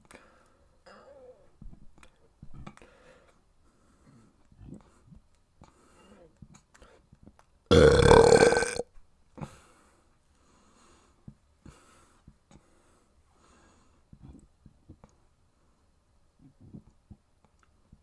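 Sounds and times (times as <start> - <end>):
faint breaths: 0.0 - 1.2, 2.7 - 7.1, 9.4 - 14.4
person burping loudly: 7.7 - 8.8.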